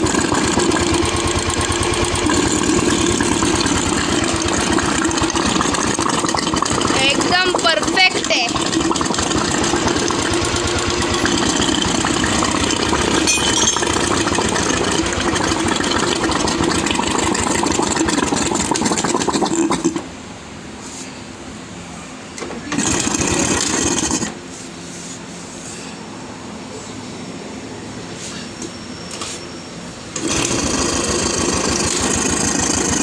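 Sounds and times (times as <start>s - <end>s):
motorcycle engine running: 0.0s - 5.8s, 8.5s - 16.1s, 30.2s - 33.0s.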